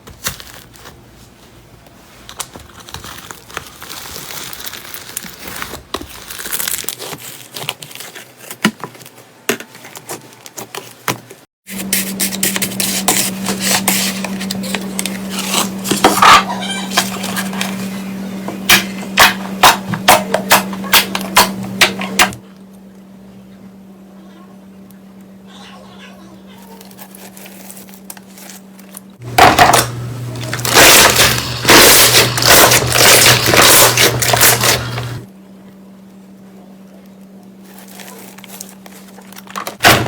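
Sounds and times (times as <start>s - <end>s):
steady low hum: 11.7s - 40.0s.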